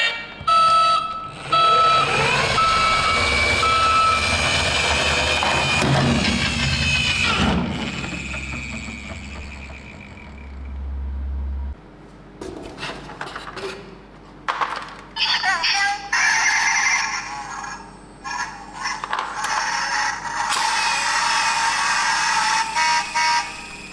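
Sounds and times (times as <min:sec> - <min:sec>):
toy electronic siren wavering: 0:00.0 - 0:11.4, 0:16.2 - 0:23.9
low rumble: 0:05.8 - 0:11.9.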